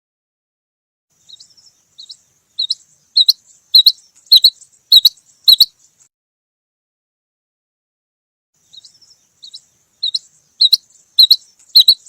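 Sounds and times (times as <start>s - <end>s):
quail high two-part chirps: 2.0s - 5.8s, 8.8s - 12.0s.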